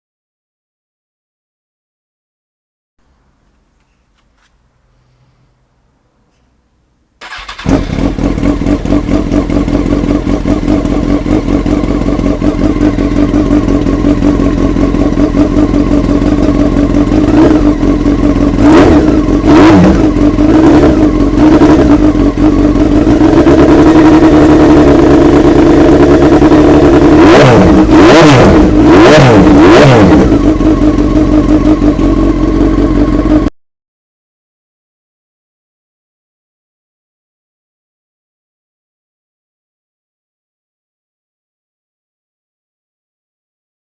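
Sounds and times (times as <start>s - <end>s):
motorcycle engine idling and revving: 7.2s - 33.5s.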